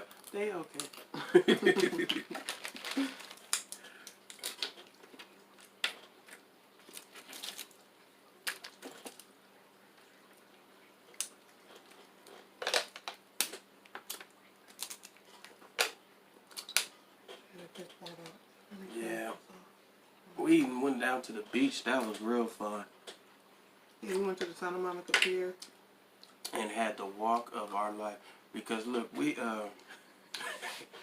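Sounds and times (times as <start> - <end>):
shells cracking: 1.8 - 7.8, 8.4 - 9.3, 12.6 - 17.0.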